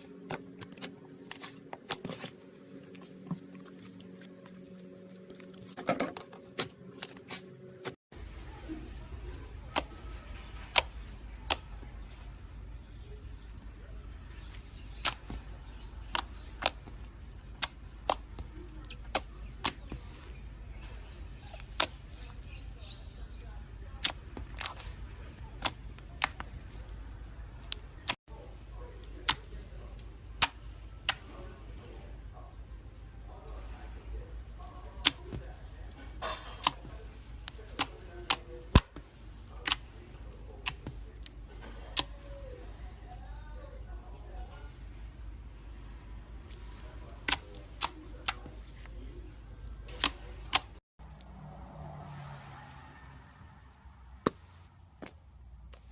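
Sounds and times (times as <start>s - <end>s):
squishy slime rustle: 0.0s - 5.8s, 6.5s - 12.9s.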